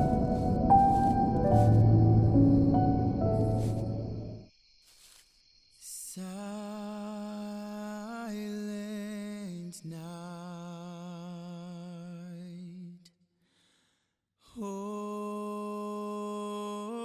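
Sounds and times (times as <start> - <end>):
wordless voice holding low notes: 0.0 - 4.4.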